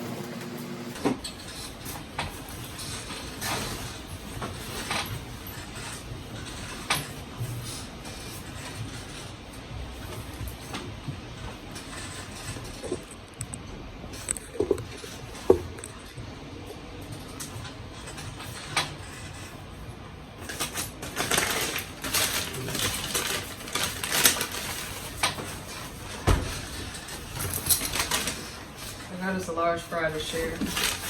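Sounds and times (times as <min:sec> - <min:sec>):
paper bags knocking and clicking: 0:20.4 - 0:29.1, 0:30.2 - 0:31.0
paper crinkling and rustling: 0:20.4 - 0:31.0.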